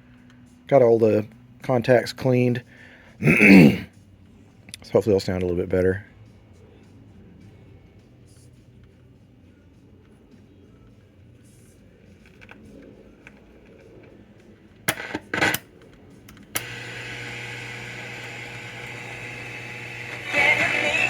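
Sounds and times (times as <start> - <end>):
radio hum with hiss: 16.5 - 21.0.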